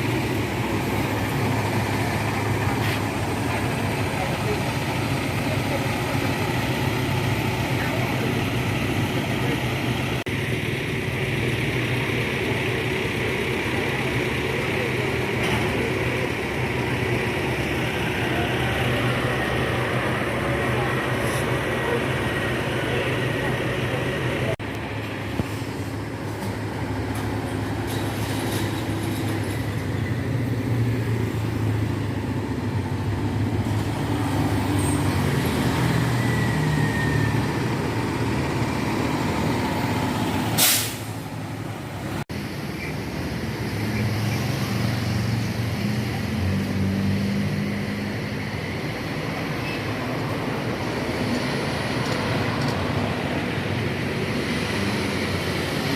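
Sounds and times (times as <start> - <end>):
bus diesel engines running: 0.0 - 55.9
air brakes hissing: 40.4 - 41.3.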